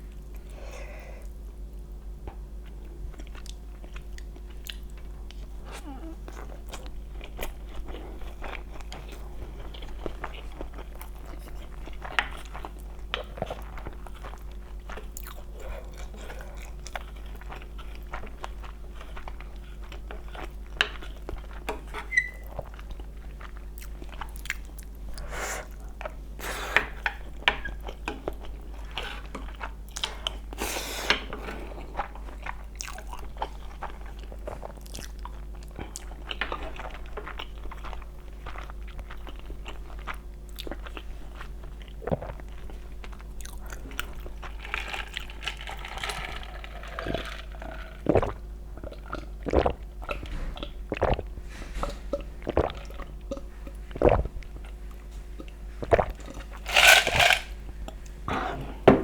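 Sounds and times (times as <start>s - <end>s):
crunchy chewing and biting: 37.3s - 50.2s
wet mouth sounds: 47.0s - 54.6s.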